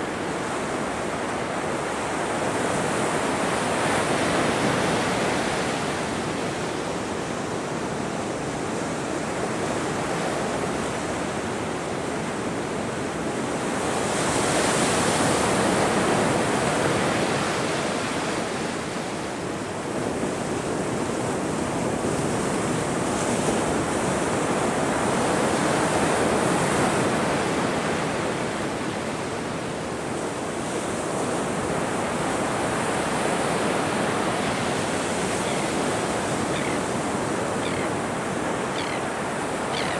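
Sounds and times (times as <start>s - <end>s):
ocean waves breaking: 13.6s - 39.9s.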